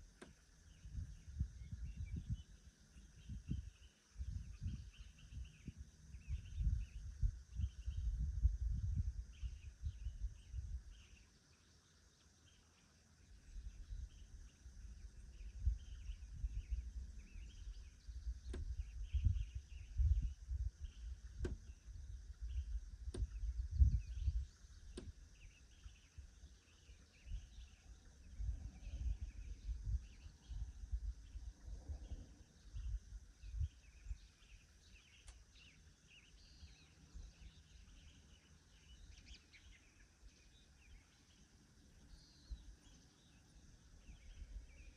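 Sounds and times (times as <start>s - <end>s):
wind rumble on microphone: 0.0s - 11.2s, 13.2s - 44.9s
birds chirping: 0.0s - 44.9s.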